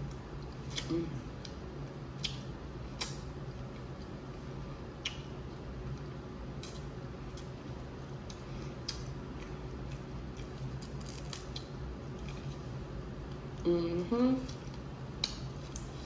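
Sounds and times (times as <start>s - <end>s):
crab shells cracking: 10.7s - 11.7s.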